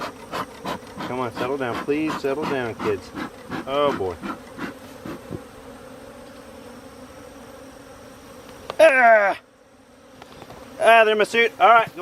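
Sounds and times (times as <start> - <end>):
honeybees buzzing: 0.0 - 12.0
person exclaiming: 8.8 - 9.5.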